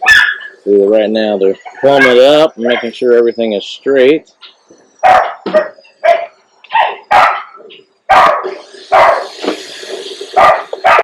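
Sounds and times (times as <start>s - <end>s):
dog barking: 0.0s - 0.6s, 1.6s - 3.0s, 5.0s - 9.4s, 10.3s - 11.0s.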